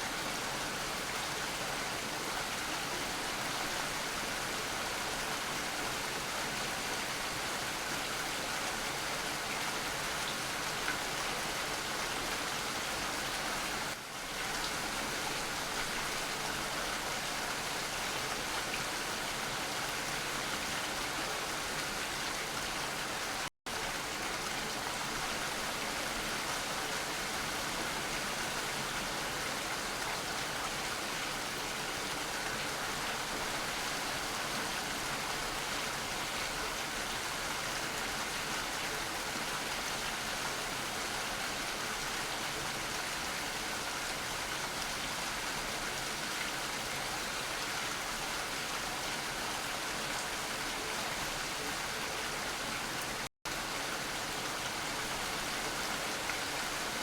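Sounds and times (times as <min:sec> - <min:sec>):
steady rain: 0:00.0 - 0:57.0.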